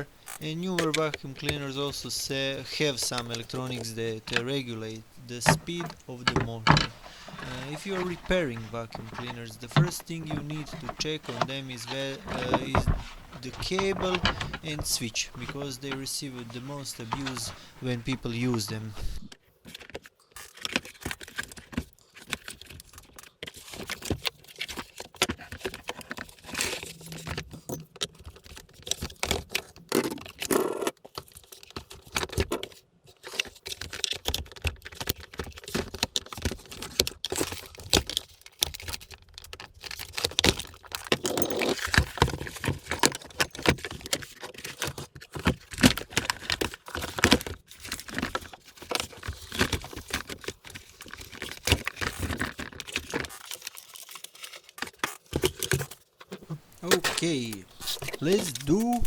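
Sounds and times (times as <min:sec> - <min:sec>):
vacuum cleaner parts rattling: 0:00.0 - 0:19.1, 0:39.9 - 0:59.0.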